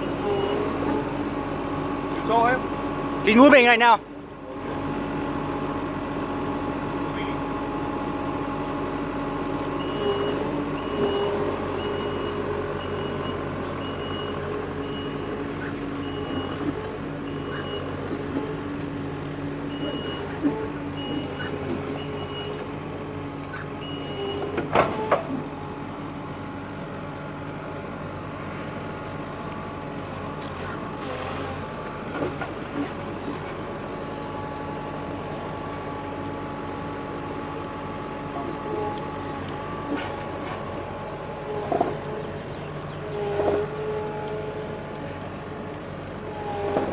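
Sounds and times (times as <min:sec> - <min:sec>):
machine engine running: 0:00.0 - 0:46.9
backup alarm beeping: 0:09.8 - 0:18.5, 0:19.7 - 0:22.6.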